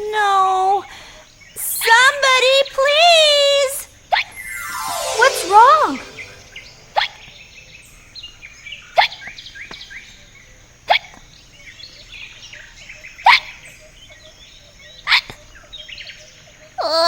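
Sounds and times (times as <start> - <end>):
faint birdsong: 8.2 - 17.0.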